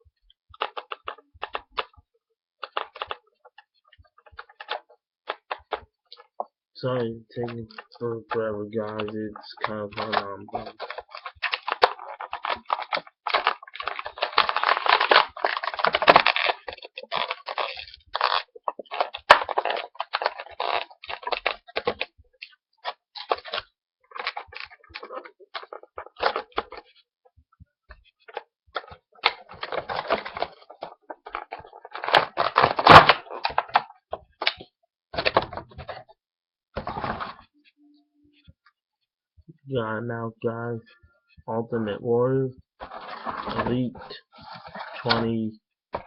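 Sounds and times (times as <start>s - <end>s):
plastic packaging crackling: 2.6s - 3.2s, 8.8s - 27.0s, 28.0s - 36.1s.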